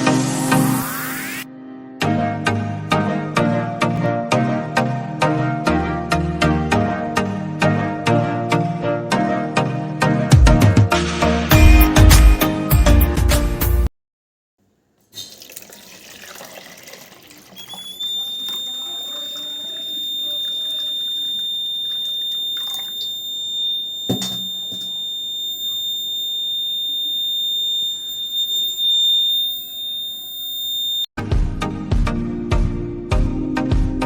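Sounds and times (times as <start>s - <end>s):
water running from a tap: 15.1s - 23.9s
high-pitched alarm buzzer: 17.6s - 31.1s.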